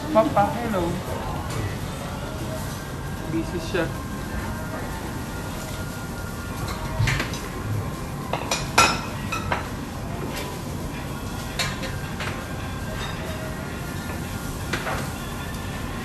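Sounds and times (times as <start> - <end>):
utensils clinking on plates: 8.3 - 10.6, 11.4 - 15.1.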